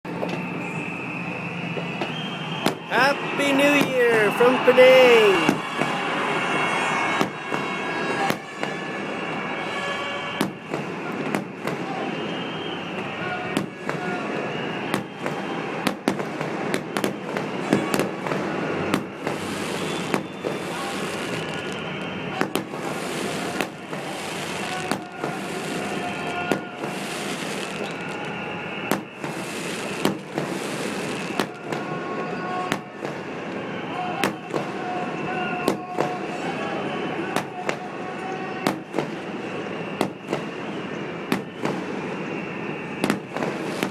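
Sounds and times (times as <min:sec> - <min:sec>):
fireworks bangs: 0:00.1 - 0:43.9
firework shells bursting: 0:10.4 - 0:11.8, 0:13.6 - 0:14.0, 0:28.8 - 0:31.8, 0:37.4 - 0:37.7, 0:38.7 - 0:39.2, 0:41.3 - 0:41.9, 0:42.9 - 0:43.9.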